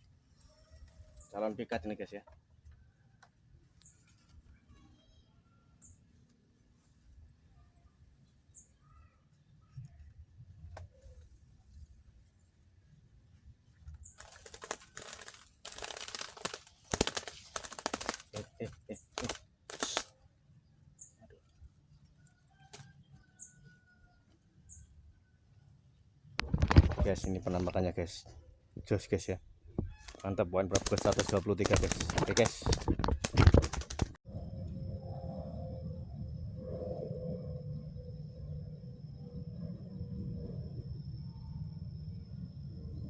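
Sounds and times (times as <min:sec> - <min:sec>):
faint bird chirps: 0:00.3 - 0:12.0, 0:20.8 - 0:26.1
faint high chirps: 0:07.4 - 0:11.4
bird wings flapping: 0:14.1 - 0:20.1, 0:26.4 - 0:27.7, 0:29.8 - 0:34.2
faint high whine: 0:34.3 - 0:43.0.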